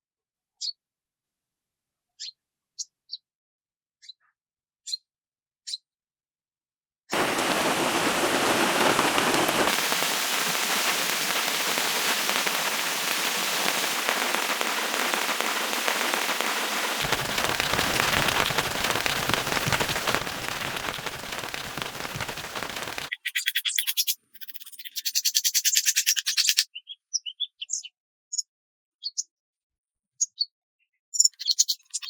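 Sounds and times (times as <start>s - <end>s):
heavy rain falling: 7.1s - 23.1s.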